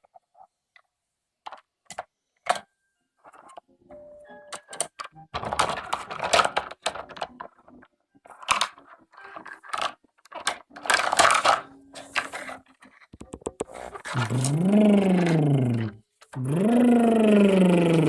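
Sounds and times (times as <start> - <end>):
plastic toy vehicles clattering: 4.6 - 14.2.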